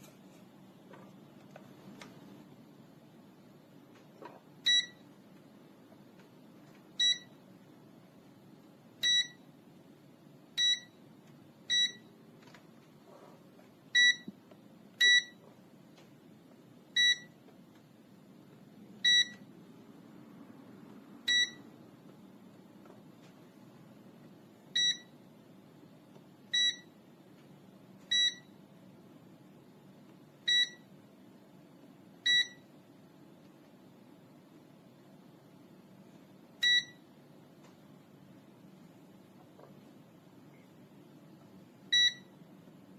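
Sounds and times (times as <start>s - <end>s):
short electronic beeps: 21.3s - 21.6s.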